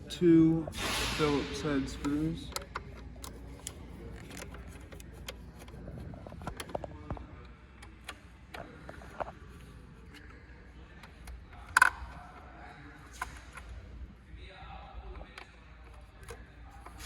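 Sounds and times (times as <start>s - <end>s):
screwdriver clicks and scrapes: 2.0s - 6.8s.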